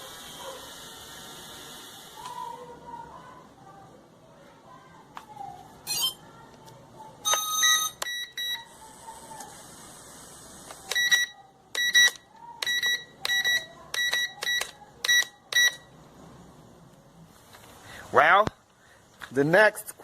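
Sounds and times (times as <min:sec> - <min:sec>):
high-pitched electronic beeps: 0:05.9 - 0:06.2, 0:10.9 - 0:15.9.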